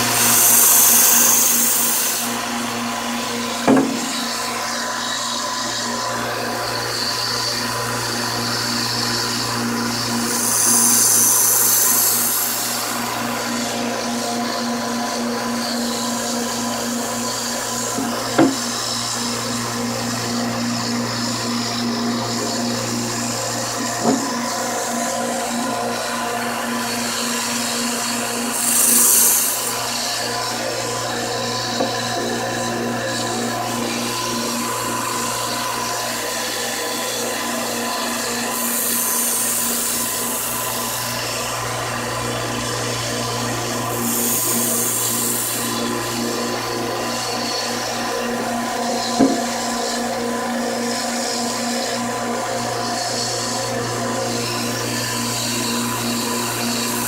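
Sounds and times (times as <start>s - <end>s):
knife sharpener motor humming: 0.0s - 57.0s
brief knock: 3.6s - 4.4s, 18.0s - 18.7s, 24.0s - 24.4s, 49.2s - 49.5s.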